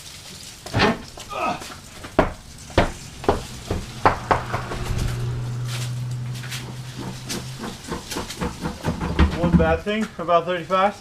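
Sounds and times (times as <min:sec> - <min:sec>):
steady low hum: 0:01.0 - 0:09.0.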